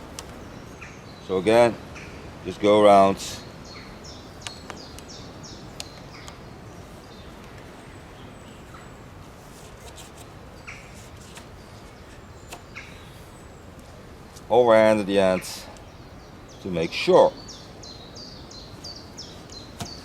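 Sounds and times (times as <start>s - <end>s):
birds chirping: 0.0s - 20.0s
outdoor background hiss: 0.0s - 20.0s
rope clicks and rustles: 9.2s - 12.7s.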